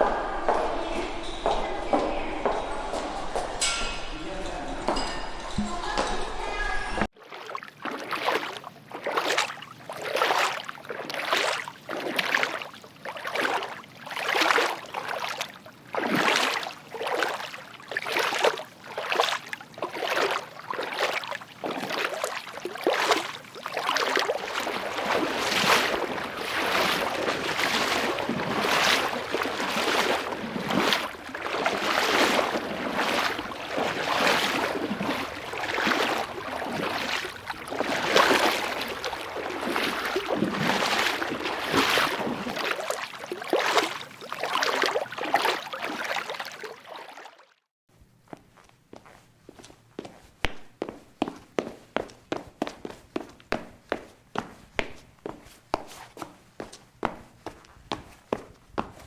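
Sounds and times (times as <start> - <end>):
swishing footsteps: 0.0 - 7.1, 21.0 - 46.5, 48.4 - 59.0.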